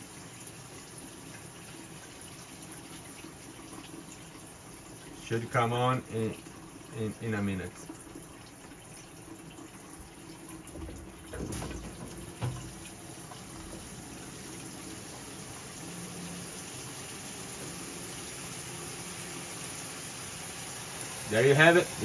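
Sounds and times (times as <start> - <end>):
water running from a valve: 0.0 - 22.0
knocks: 10.7 - 12.8.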